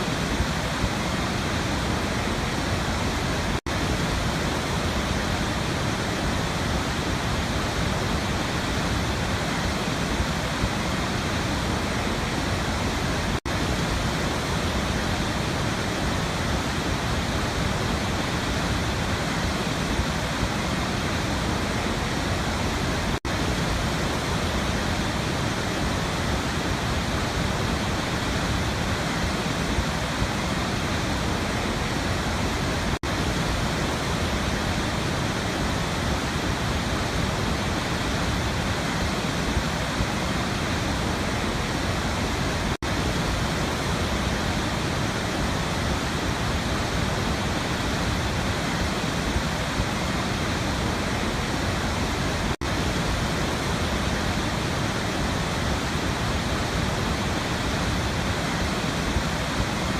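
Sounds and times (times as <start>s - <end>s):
waterfall roaring: 0.0s - 59.9s.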